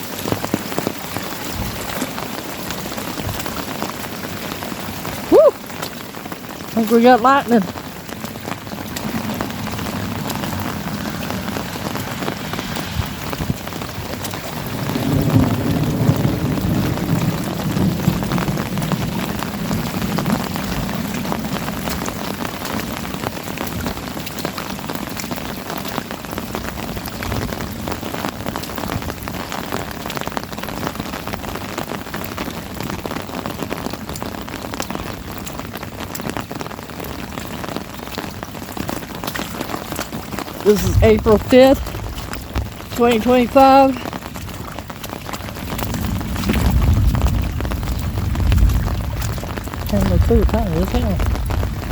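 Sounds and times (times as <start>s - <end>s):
heavy rain pattering: 0.0s - 51.9s
rolling thunder rumble: 7.7s - 23.3s, 40.5s - 51.9s.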